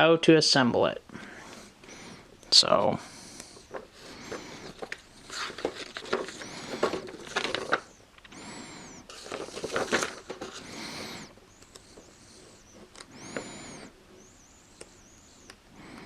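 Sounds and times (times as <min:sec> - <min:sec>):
plastic bags rustling and crinkling: 0:03.6 - 0:08.0, 0:09.1 - 0:11.3.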